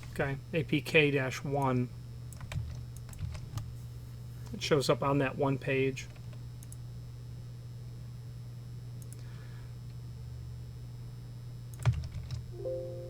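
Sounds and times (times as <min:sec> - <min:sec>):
low electrical hum: 0:00.0 - 0:13.0
computer mouse clicks: 0:06.2 - 0:06.8, 0:11.7 - 0:12.4.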